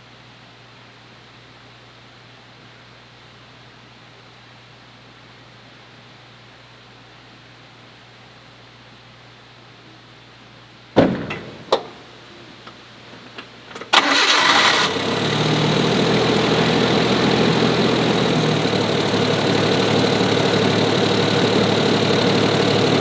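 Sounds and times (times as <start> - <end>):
sharp knocks: 11.0 - 12.1
car engine starting and idling: 11.0 - 23.0.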